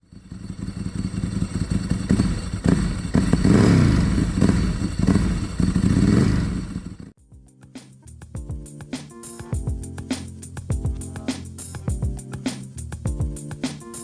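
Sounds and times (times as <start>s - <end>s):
motorcycle engine revving: 0.0s - 7.1s.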